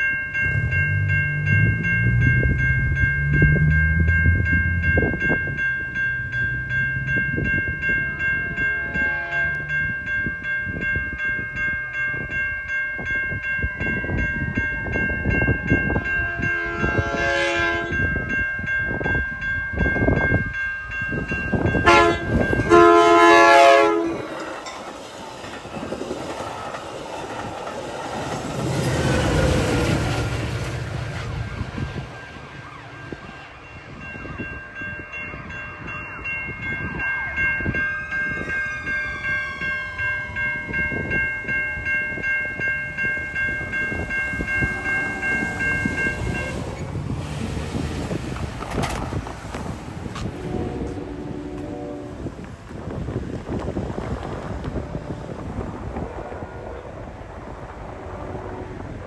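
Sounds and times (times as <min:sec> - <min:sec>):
steady repeating bell ringing: 0:00.0 - 0:49.0
train rumbling by: 0:00.0 - 0:59.0
train horn: 0:08.6 - 0:09.7, 0:16.0 - 0:18.1, 0:21.8 - 0:24.5, 0:50.2 - 0:52.4, 0:54.6 - 0:57.2, 0:57.9 - 0:59.0
wheels clicking over rails: 0:24.2 - 0:33.1, 0:43.6 - 0:50.5.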